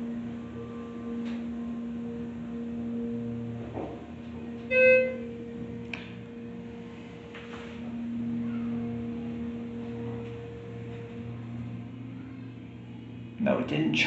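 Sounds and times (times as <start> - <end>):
steady low hum: 0.0 - 14.0
electronic elevator ding: 4.6 - 5.3.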